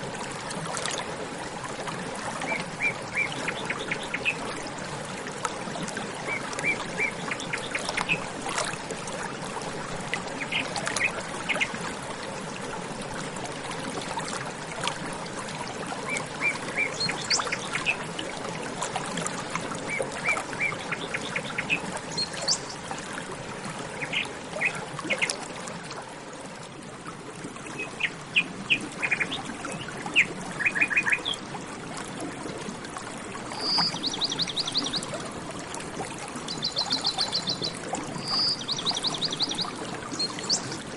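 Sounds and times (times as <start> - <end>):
running water: 0.0 - 40.9
small birds chirping: 36.6 - 40.8.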